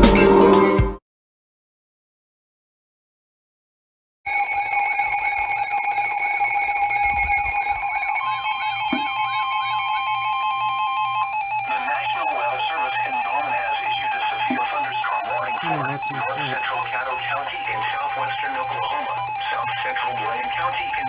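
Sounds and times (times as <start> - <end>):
extra steady tone: 4.3 - 21.0
steady electronic alarm tone: 4.3 - 21.0.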